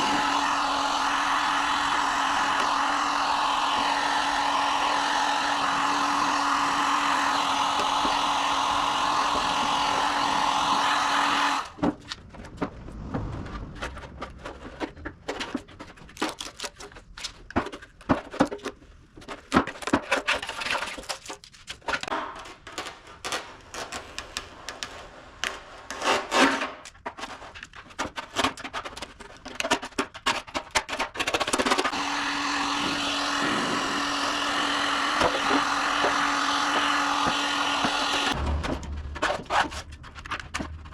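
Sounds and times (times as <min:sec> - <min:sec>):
power tool humming: 0:00.0 - 0:11.8, 0:31.9 - 0:38.4.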